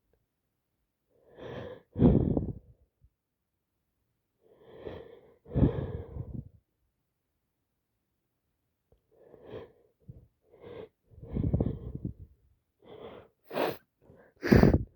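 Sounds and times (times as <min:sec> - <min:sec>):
person sneezing: 0:14.4 - 0:14.8.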